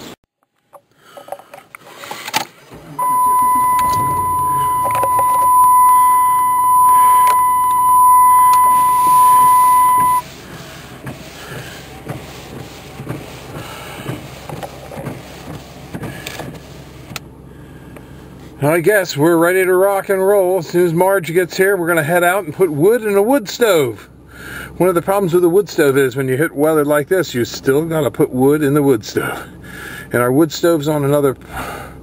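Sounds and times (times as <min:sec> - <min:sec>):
low rumble: 0:03.0 - 0:10.2
steady electronic beep: 0:03.0 - 0:10.2.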